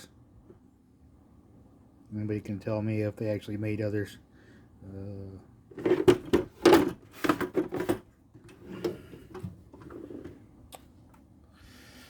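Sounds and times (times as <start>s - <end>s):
tools clattering in toolbox: 5.8s - 8.6s.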